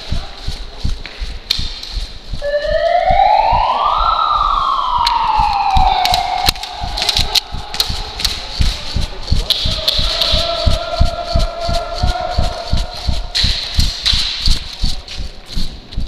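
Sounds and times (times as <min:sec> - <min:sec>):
siren winding up and down: 0:02.4 - 0:07.4
scattered clicks and knocks: 0:05.0 - 0:16.0.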